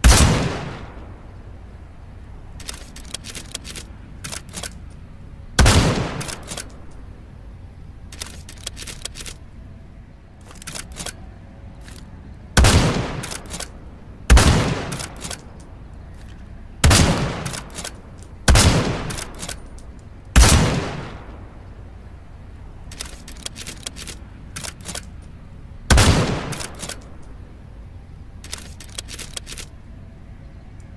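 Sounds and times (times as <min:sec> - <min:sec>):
rifle shots echoing: 0:00.0 - 0:01.4, 0:05.6 - 0:07.1, 0:12.6 - 0:15.7, 0:16.8 - 0:21.7, 0:25.9 - 0:27.4
sharp clicks: 0:02.5 - 0:05.0, 0:05.6 - 0:07.1, 0:08.0 - 0:09.5, 0:10.3 - 0:21.4, 0:22.8 - 0:27.5, 0:28.4 - 0:29.9.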